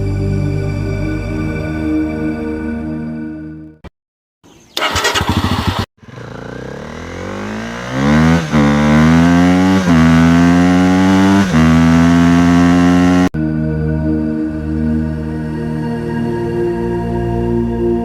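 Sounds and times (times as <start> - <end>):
motorcycle engine revving: 4.8 - 13.4.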